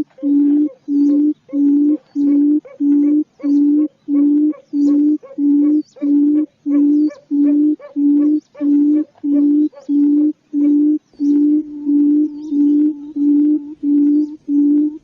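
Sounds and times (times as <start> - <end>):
faint high chirps: 0.0 - 15.0
quail hooting: 0.0 - 15.0.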